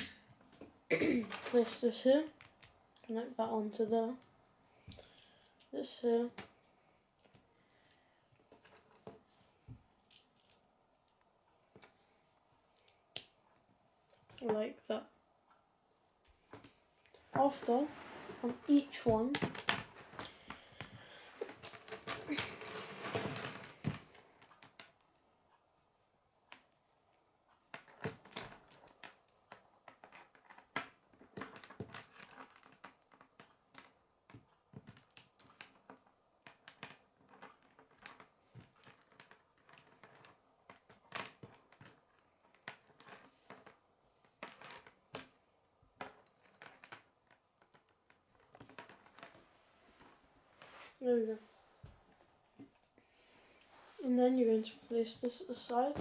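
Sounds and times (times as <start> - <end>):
clatter of plastic pieces: 1.0 - 2.7, 19.1 - 24.9, 27.7 - 43.8, 46.0 - 49.4.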